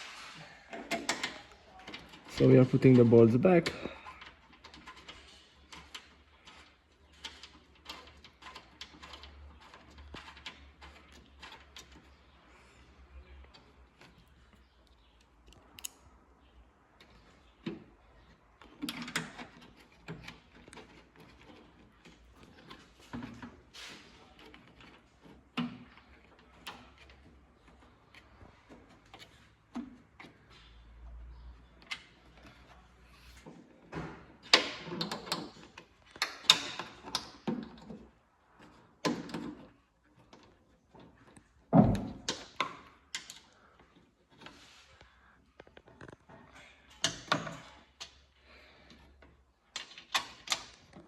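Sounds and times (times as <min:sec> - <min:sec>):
hand tools clicking and knocking: 0:00.7 - 0:12.2, 0:34.3 - 0:44.6, 0:45.7 - 0:51.0
car parts knocking and clicking: 0:33.5 - 0:44.6.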